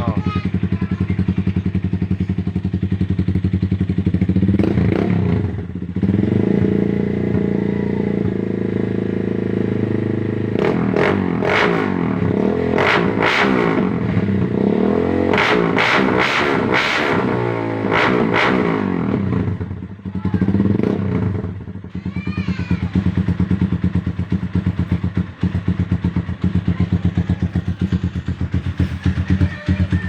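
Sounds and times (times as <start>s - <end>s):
motorcycle engine revving: 0.0s - 30.0s.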